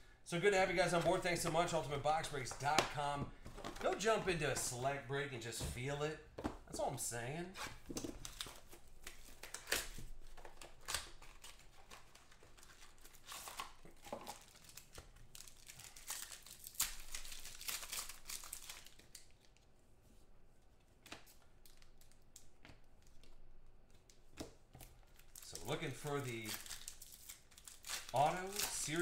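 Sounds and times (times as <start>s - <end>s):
plastic wrapping crinkling and tearing: 7.9s - 19.6s, 25.0s - 29.0s.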